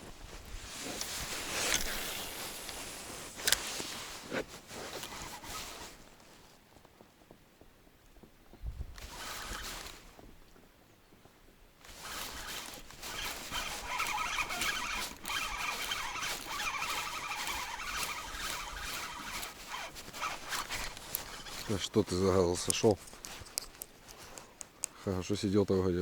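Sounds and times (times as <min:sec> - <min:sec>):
spinning reel ratcheting whir: 0:09.0 - 0:09.9, 0:11.9 - 0:24.4.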